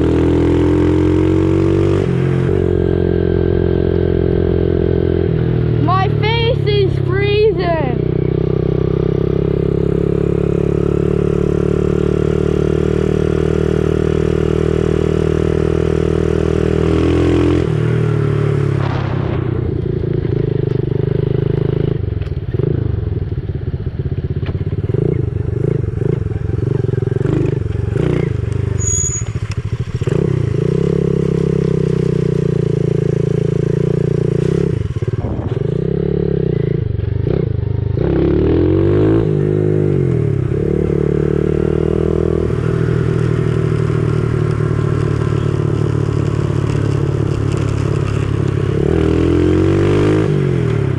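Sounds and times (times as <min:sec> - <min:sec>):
dirt bike engine revving: 0:30.0 - 0:50.9.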